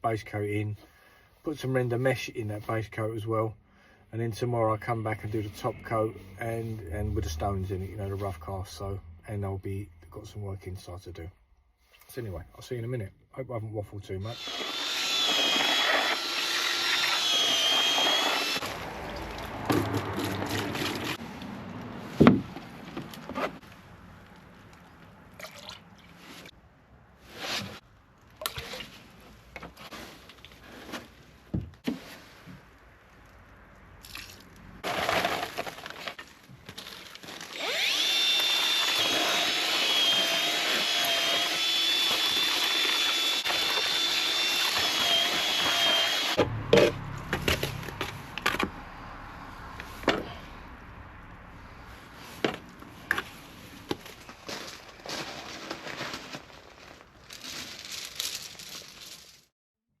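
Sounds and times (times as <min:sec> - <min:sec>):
power tool motor whining: 0:14.3 - 0:18.8, 0:37.5 - 0:46.5
knocks and clatter: 0:46.4 - 0:48.8.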